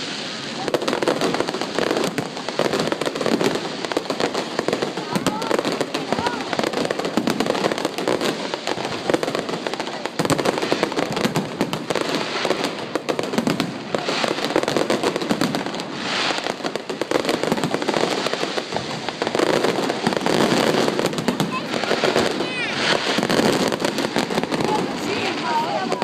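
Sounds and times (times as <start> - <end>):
fireworks crackling: 0.0 - 26.0.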